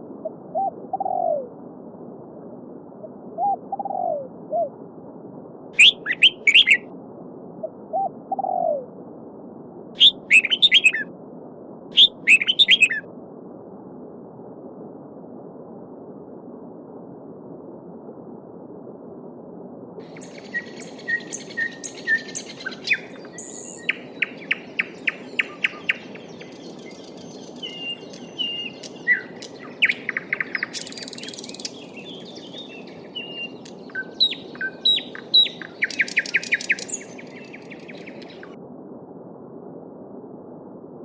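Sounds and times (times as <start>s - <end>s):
songbirds singing: 5.8s - 6.8s, 10.0s - 11.0s, 12.0s - 13.0s, 20.0s - 38.6s.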